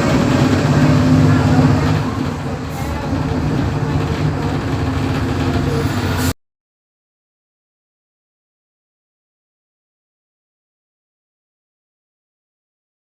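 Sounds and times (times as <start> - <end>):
bus engine droning: 0.0 - 6.4.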